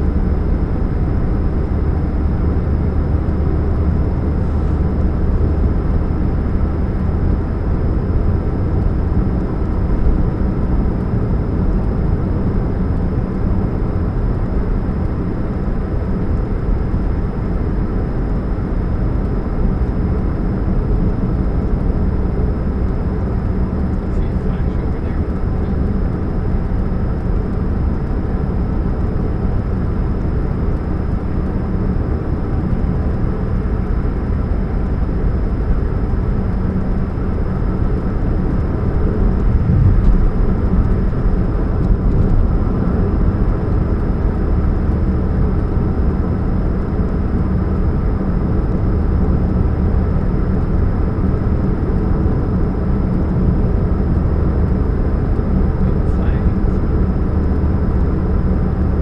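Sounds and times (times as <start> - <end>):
car engine humming: 34.8 - 45.3.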